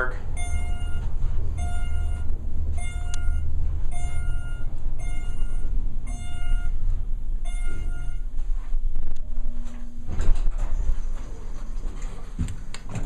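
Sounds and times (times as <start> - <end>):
elevator car humming: 0.0 - 13.0
electronic beep: 0.3 - 6.8, 7.4 - 8.3.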